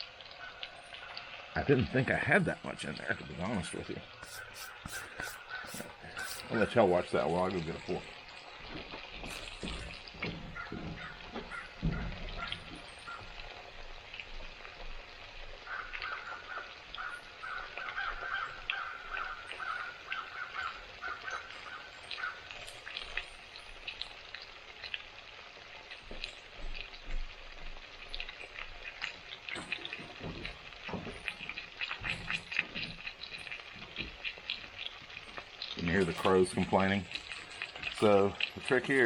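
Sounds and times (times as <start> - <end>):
chicken sizzling in hot oil: 0.0 - 39.0
crows cawing: 4.2 - 6.7, 10.3 - 13.5, 15.6 - 22.9.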